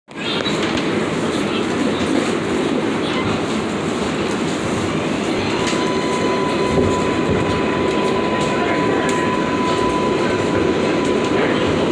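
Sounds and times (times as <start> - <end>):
subway train rumbling: 0.1 - 11.9
steady high-pitched tone: 5.3 - 11.9.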